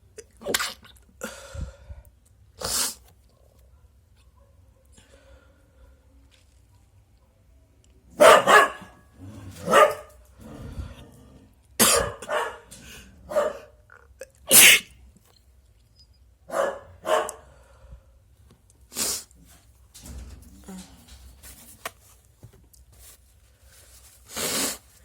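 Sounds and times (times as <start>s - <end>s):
dog barking: 3.3s - 5.0s, 8.1s - 10.2s, 11.8s - 13.8s, 16.5s - 17.5s.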